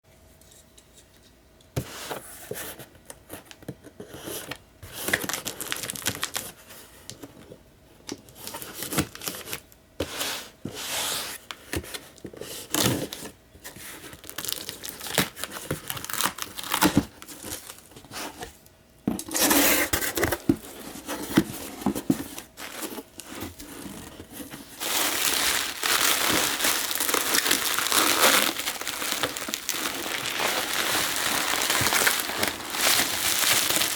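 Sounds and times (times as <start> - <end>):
packaging being torn and crumpled: 5.1 - 6.5, 14.2 - 17.8, 24.6 - 33.9.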